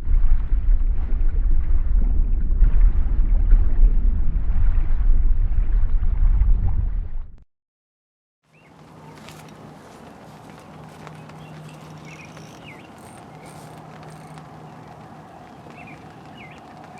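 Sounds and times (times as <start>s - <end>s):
wind buffeting microphone: 0.0s - 7.4s.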